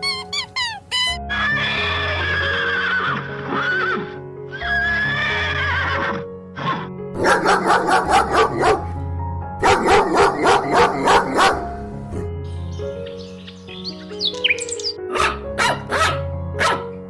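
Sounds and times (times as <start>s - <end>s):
horse whinnying: 0.0s - 6.9s
soft background music: 0.0s - 17.0s
dog barking: 7.2s - 8.9s, 9.6s - 11.7s, 15.1s - 16.9s.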